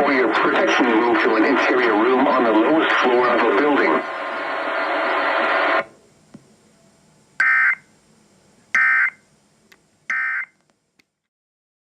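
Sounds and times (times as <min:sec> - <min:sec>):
digital data tone bursts: 0:07.4 - 0:07.9, 0:08.8 - 0:09.2, 0:10.1 - 0:10.5.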